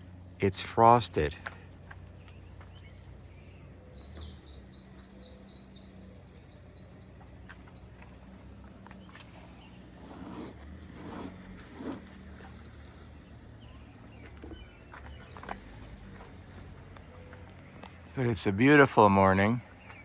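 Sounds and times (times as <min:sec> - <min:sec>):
short scraping sounds: 0:09.2 - 0:12.1.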